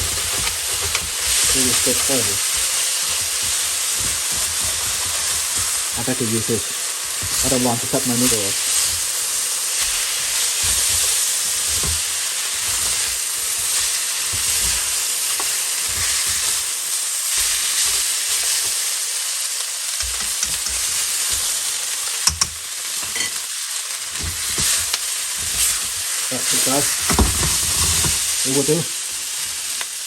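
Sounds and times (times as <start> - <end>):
utensil scraping and thudding: 0.0 - 6.0, 7.1 - 16.6, 24.1 - 28.4
noodles sizzling in a pan: 0.0 - 30.0.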